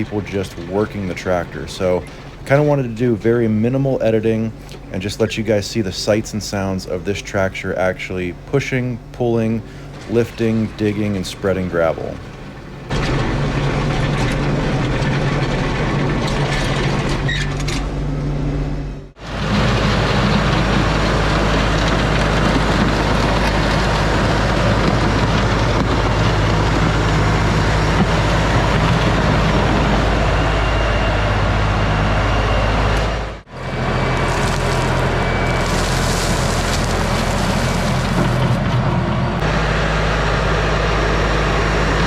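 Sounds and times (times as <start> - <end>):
tractor diesel engine running: 0.0 - 42.0.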